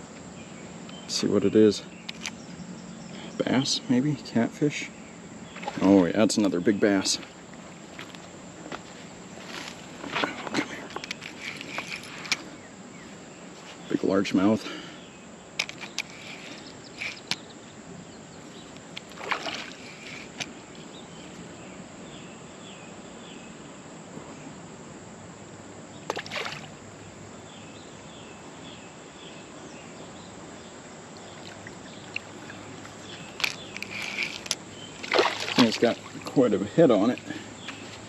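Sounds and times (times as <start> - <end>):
outdoor hiss: 0.0 - 38.0
water splashing and sloshing: 5.5 - 6.2, 18.7 - 20.9, 26.0 - 26.8, 31.0 - 38.0.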